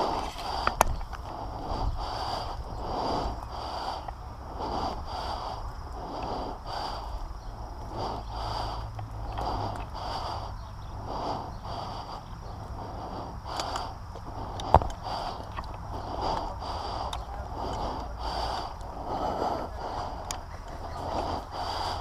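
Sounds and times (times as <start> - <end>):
low steady rumble: 0.0 - 22.0
person breathing hard: 0.0 - 22.0.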